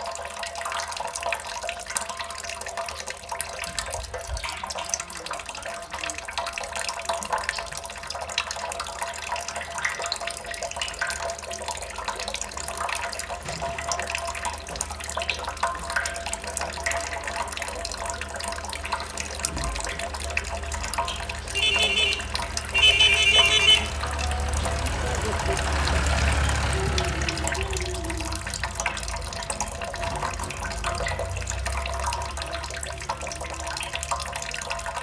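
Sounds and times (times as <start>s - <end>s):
water drops splashing into water: 0.0s - 35.0s.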